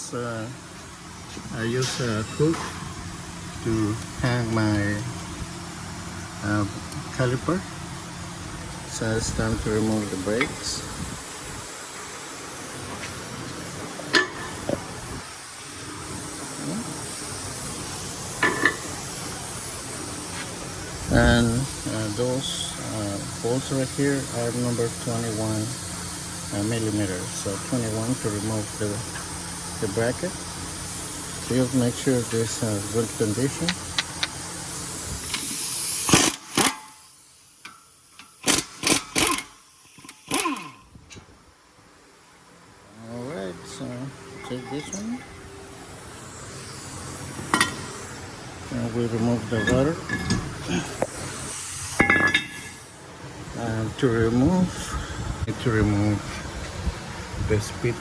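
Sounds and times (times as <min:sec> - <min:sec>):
steady background hiss: 0:00.0 - 0:58.0
impact wrench bursts: 0:21.1 - 0:40.9, 0:46.0 - 0:48.3, 0:49.5 - 0:53.0.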